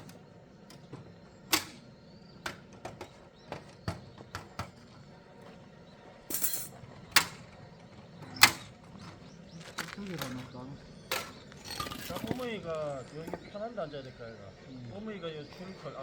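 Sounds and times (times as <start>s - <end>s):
objects knocking and clicking: 11.1s - 12.5s.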